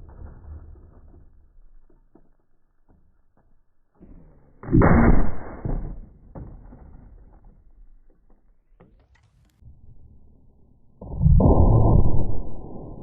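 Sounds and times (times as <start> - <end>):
rifle shot with rumbling echo: 4.6 - 6.1.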